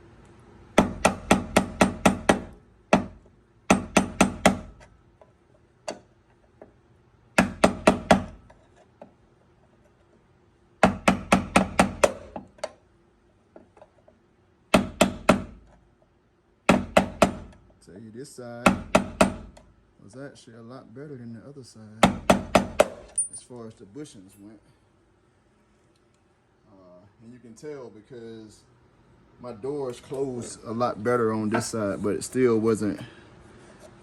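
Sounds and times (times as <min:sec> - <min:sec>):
hammer striking metal punch: 0:00.8 - 0:04.8, 0:07.4 - 0:08.4, 0:10.8 - 0:12.5, 0:14.7 - 0:15.6, 0:16.7 - 0:17.6, 0:18.6 - 0:19.6, 0:22.0 - 0:23.3.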